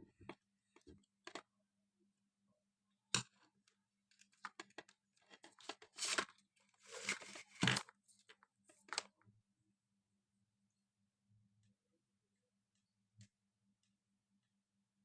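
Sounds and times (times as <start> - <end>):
tearing rustling scrapes: 5.9 - 7.8.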